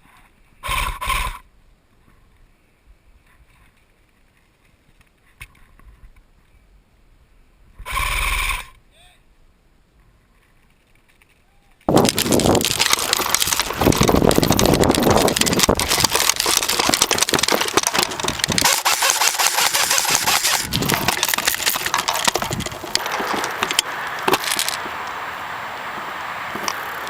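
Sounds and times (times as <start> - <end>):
gearbox motor buzz: 11.9 - 24.9
airsoft rifle firing bursts: 15.8 - 22.0.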